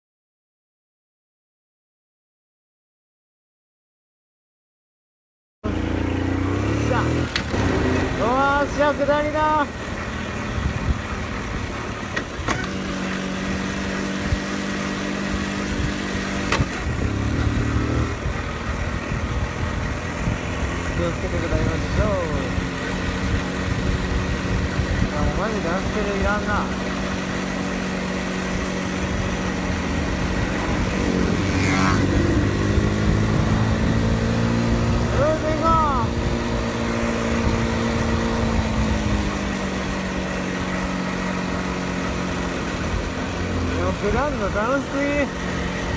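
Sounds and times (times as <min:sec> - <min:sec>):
small engine running: 0:05.6 - 0:45.9
steady engine hum: 0:05.6 - 0:45.9
wind rumble on microphone: 0:10.5 - 0:11.7, 0:15.3 - 0:26.1, 0:28.4 - 0:40.1.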